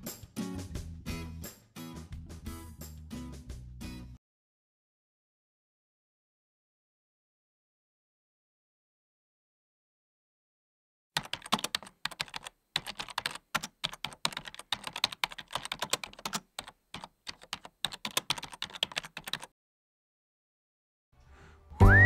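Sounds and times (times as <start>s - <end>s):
keyboard typing clicks: 11.2s - 19.5s.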